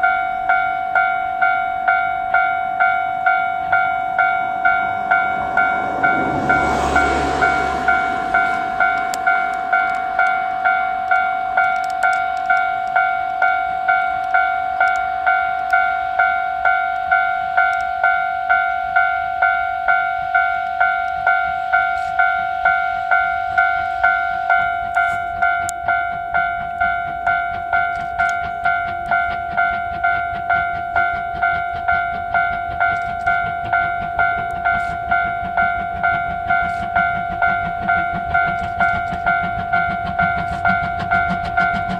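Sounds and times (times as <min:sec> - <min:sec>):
level-crossing alarm bell: 0:00.0 - 0:41.9
faint low rumble: 0:03.5 - 0:11.8.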